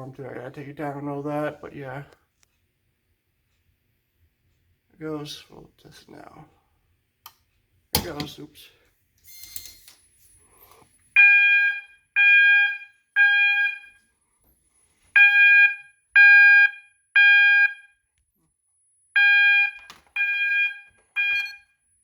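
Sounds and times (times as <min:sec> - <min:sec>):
fire alarm horn tones: 0:15.2 - 0:18.0, 0:19.2 - 0:21.7.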